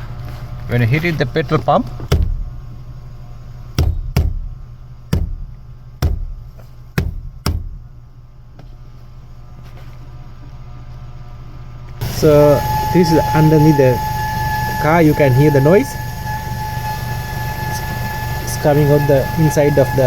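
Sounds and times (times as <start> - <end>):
car engine humming: 0.0 - 9.0, 12.0 - 20.0
knocks on fuel tank: 2.1 - 2.5.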